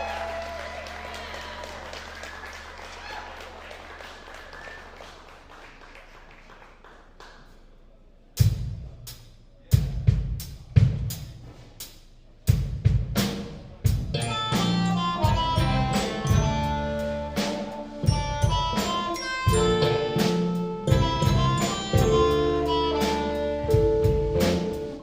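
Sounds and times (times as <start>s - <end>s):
drum kit hits: 12.6s - 25.0s
rock band playing: 12.9s - 25.0s
guitar chords: 14.1s - 25.0s.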